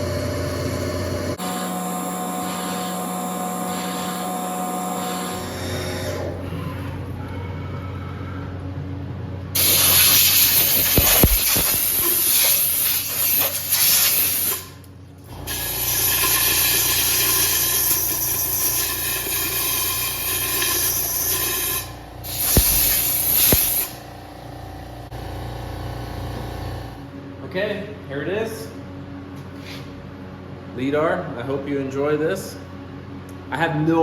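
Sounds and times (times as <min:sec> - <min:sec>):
low machine hum: 0:00.0 - 0:12.0, 0:14.6 - 0:34.0
drilling hiss: 0:09.6 - 0:24.1.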